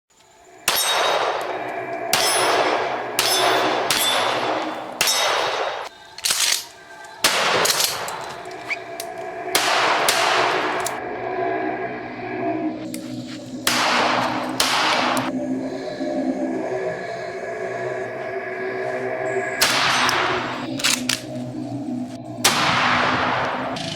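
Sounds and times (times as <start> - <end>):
shotgun shots with echo: 0.7 - 6.6, 7.2 - 8.3, 9.6 - 10.9, 13.7 - 15.3, 19.6 - 20.6, 22.4 - 23.9.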